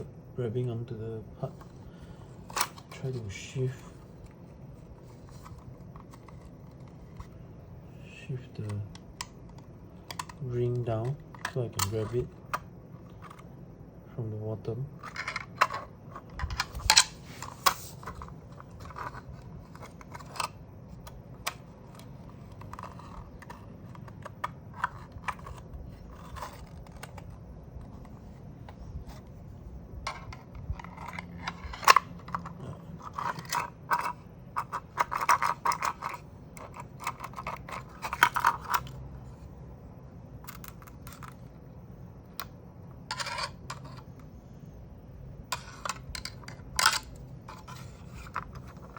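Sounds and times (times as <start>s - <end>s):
plastic and metal parts clicking: 8.6s - 13.5s, 15.0s - 29.3s, 30.1s - 39.0s, 45.5s - 48.9s.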